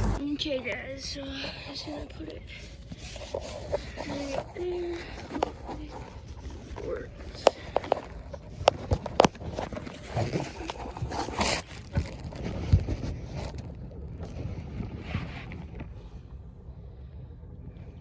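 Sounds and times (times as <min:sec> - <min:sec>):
knocks in boat: 0:00.0 - 0:00.2
rustling: 0:00.0 - 0:00.2
wind on microphone: 0:00.0 - 0:00.2, 0:01.9 - 0:18.0
low steady rumble: 0:00.0 - 0:18.0.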